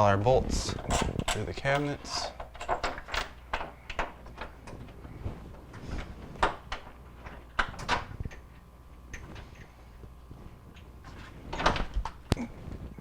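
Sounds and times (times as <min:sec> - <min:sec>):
hardware knocking and clicking: 0:00.7 - 0:04.8.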